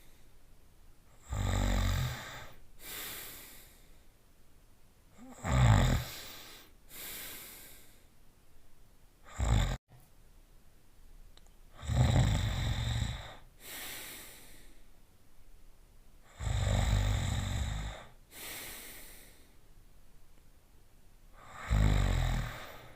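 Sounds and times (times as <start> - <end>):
cartoon dog snoring: 1.2 - 2.6, 5.2 - 6.2, 9.3 - 9.8, 11.8 - 13.4, 16.3 - 18.1, 21.4 - 22.9.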